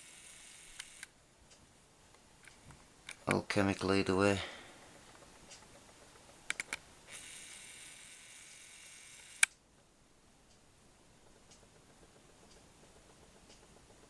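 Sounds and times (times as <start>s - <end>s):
camera zoom motor whirring: 0.0s - 1.1s, 7.1s - 9.6s
camera clicks: 0.2s - 1.1s, 6.5s - 9.6s.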